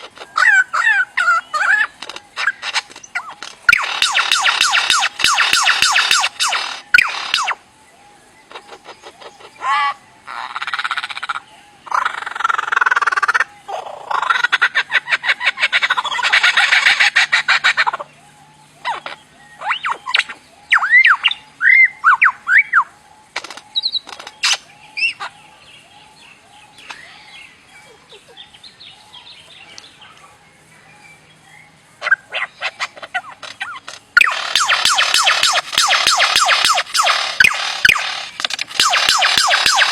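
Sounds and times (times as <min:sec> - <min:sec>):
bird calling: 0:00.0 - 0:39.9.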